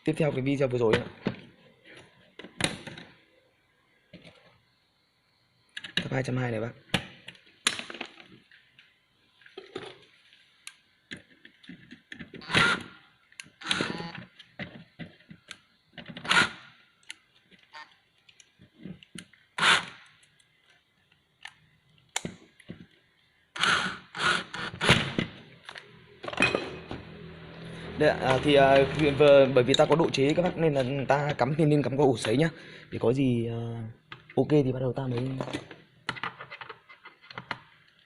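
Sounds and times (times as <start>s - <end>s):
tools clattering on bench: 26.2s - 27.0s.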